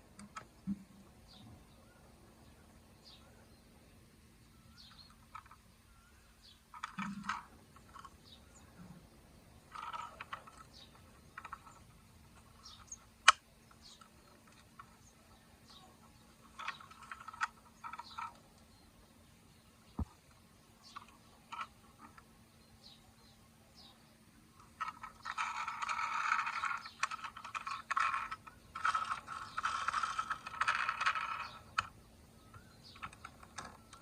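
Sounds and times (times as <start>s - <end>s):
toy cars clicking: 4.8s - 6.1s, 6.7s - 8.8s, 9.6s - 18.7s, 20.8s - 22.3s, 24.6s - 34.0s.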